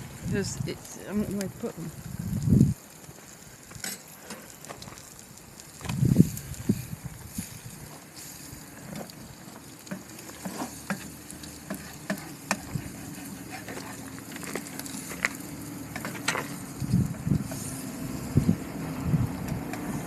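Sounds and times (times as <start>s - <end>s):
crackles and pops: 0.0s - 20.0s
food sizzling in a pan: 0.0s - 20.0s.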